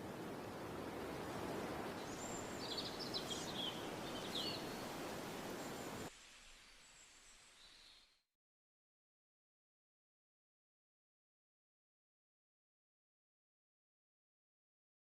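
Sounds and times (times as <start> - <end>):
noisy outdoor background: 0.0 - 8.3.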